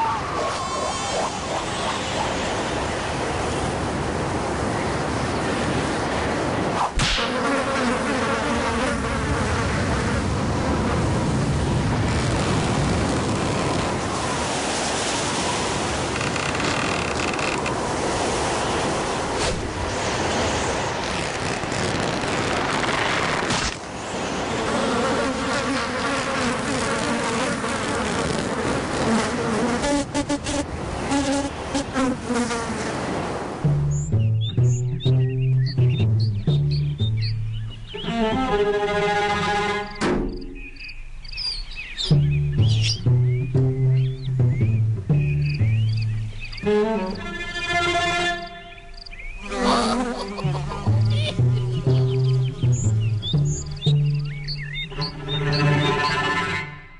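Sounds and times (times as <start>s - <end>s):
insect-like buzzing: 7.2s - 9.7s.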